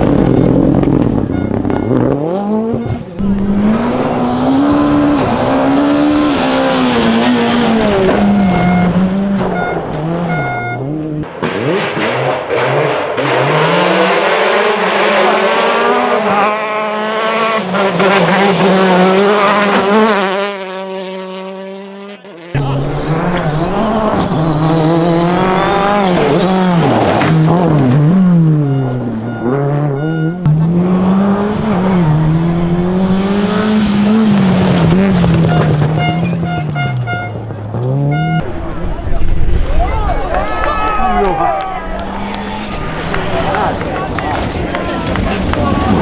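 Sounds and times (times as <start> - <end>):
rally car engines revving: 0.0 - 46.0
car passing by: 3.2 - 21.4, 30.5 - 36.4, 38.4 - 46.0.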